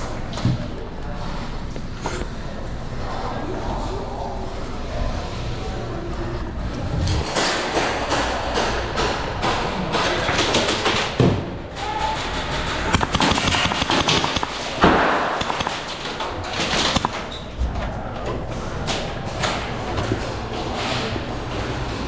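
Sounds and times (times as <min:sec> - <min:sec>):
sharp knocks and clicks: 0:12.3 - 0:17.4.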